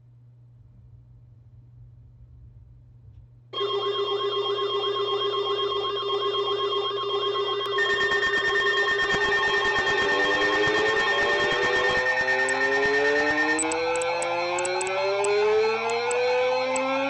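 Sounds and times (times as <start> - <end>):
electronic alarm steady tones: 3.6 - 17.0
higher alarm tone: 3.6 - 17.0
warbling alert tone: 7.7 - 17.0.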